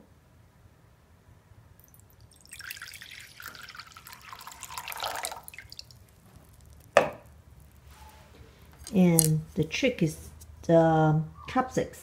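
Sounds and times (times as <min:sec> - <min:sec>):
water pouring into a bowl: 0:01.8 - 0:07.0.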